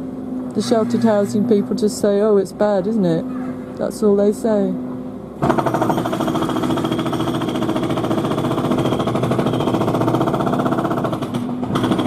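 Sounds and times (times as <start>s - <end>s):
jackhammer through walls: 5.4s - 12.0s.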